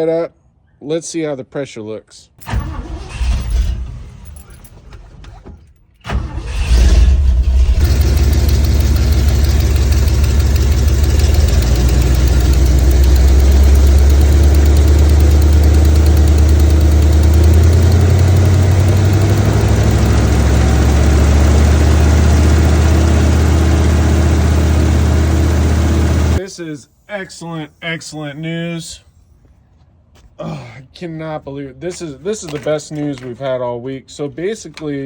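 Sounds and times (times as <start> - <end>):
car engine idling: 6.1 - 26.4
exhaust leak noise: 6.1 - 26.4.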